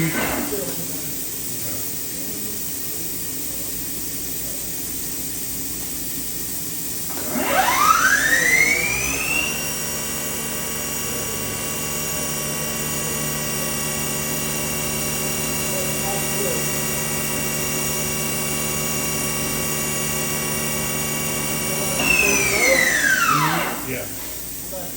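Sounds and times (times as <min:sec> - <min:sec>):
machine hum: 0:05.3 - 0:24.9
spindle whine rising in pitch: 0:07.2 - 0:18.7.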